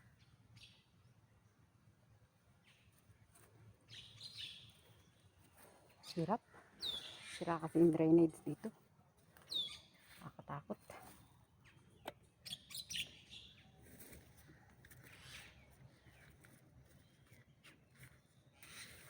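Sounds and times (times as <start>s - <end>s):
faint bird chirps: 9.5s - 13.6s.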